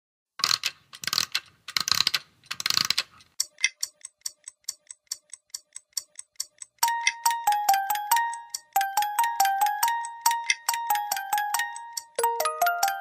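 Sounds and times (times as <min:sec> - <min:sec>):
mechanical ratcheting: 0:00.4 - 0:05.3
sharp ticking: 0:00.4 - 0:13.0.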